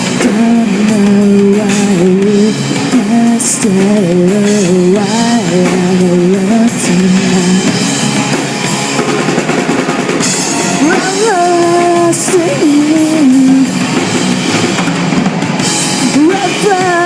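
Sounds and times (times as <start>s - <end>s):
person singing: 0.0s - 8.1s, 10.6s - 14.1s, 16.0s - 17.0s
drum kit: 0.0s - 17.0s
held melodic line: 0.0s - 17.0s
rock band playing: 0.0s - 17.0s.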